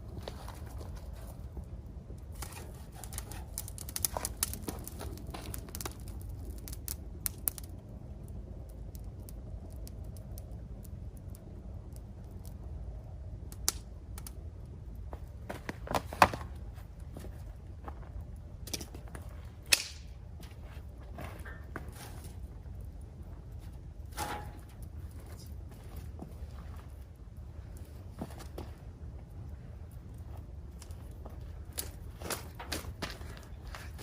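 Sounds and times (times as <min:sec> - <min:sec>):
low rumble: 0:00.0 - 0:15.5
loud fire cracks: 0:00.0 - 0:16.6, 0:18.6 - 0:20.4
wood bonfire crackling: 0:00.0 - 0:34.0.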